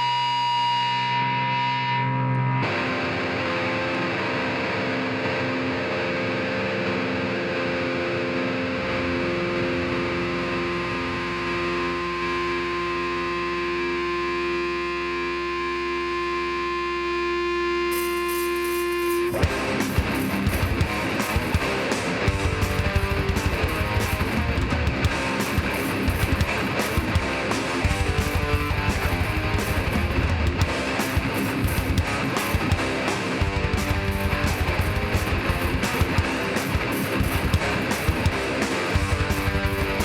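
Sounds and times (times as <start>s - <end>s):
distorted electric guitar droning: 0.0s - 40.0s
drums and full band playing: 18.0s - 40.0s.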